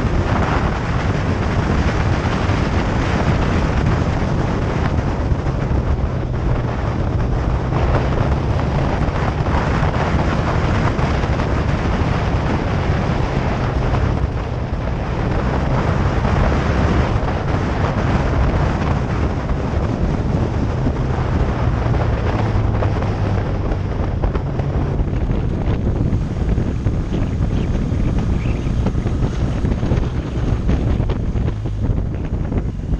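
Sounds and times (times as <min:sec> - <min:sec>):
motorcycle engine hum: 0:00.0 - 0:32.9
wind buffeting microphone: 0:00.0 - 0:32.9.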